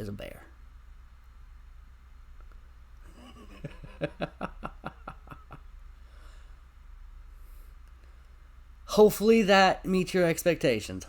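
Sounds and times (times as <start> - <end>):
man laughing: 3.1 - 5.7.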